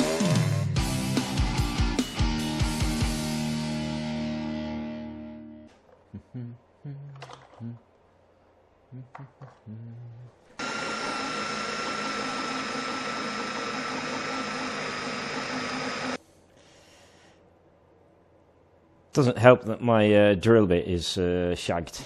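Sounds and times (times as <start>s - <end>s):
electric drill running: 10.6s - 16.2s.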